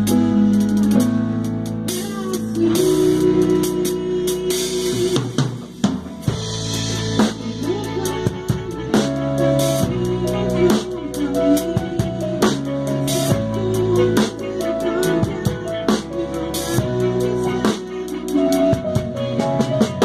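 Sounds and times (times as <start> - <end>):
bass guitar: 0.0 - 20.0
drum kit and cymbal hits: 0.0 - 20.0
keyboard sustained notes: 0.0 - 20.0.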